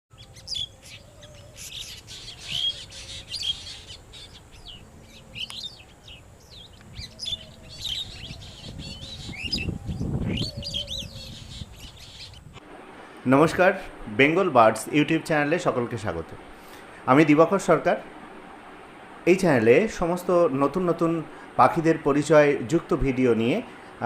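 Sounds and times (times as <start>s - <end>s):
songbirds chirping: 0.1s - 12.6s.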